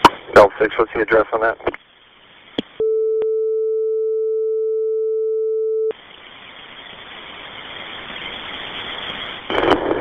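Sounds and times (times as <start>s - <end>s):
steady radio tone: 0.0s - 1.8s
radio static hiss: 0.0s - 2.8s, 5.9s - 10.0s.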